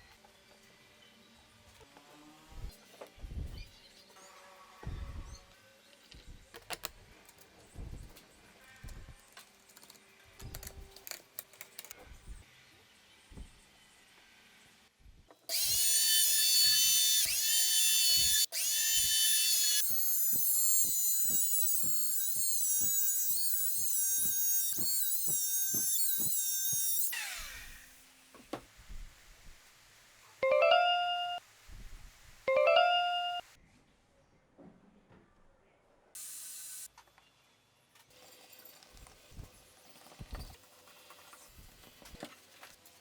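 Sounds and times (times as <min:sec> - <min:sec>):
power tool motor whining: 0:15.5 - 0:28.0.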